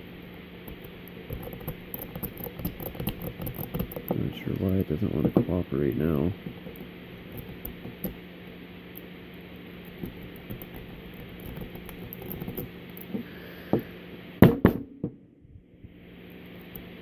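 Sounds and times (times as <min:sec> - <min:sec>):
lock pick scratching and ticking: 0:00.6 - 0:08.2, 0:09.8 - 0:13.1
loud sharp knock: 0:14.4 - 0:15.2.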